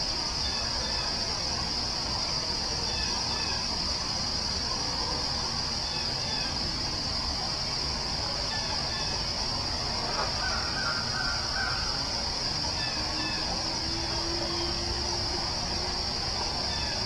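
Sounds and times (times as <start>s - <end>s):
high-pitched insect chorus: 0.0s - 17.0s
bird calls: 8.4s - 14.9s, 15.8s - 17.0s.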